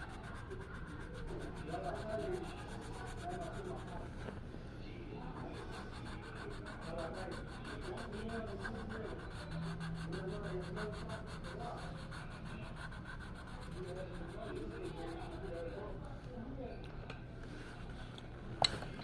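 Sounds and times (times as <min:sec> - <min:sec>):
art tool scratching a surface: 0:00.0 - 0:04.4, 0:05.2 - 0:15.9
low electrical hum: 0:00.0 - 0:19.0.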